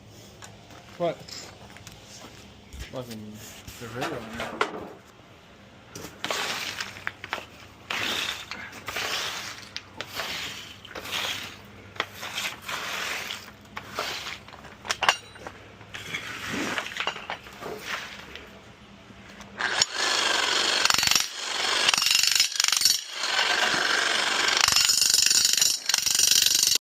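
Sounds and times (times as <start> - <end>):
jackhammer chipping concrete: 19.6 - 26.8.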